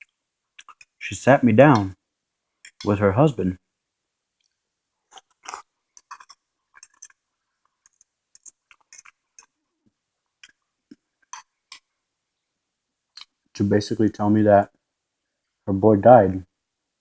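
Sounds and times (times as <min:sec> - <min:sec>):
person chewing food: 0:00.0 - 0:01.0, 0:04.4 - 0:12.0.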